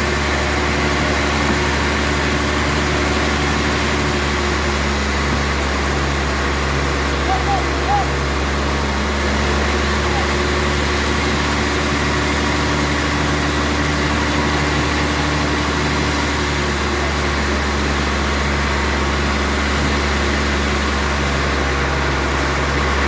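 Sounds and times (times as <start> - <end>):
sawmill machinery drone: 0.0 - 23.0.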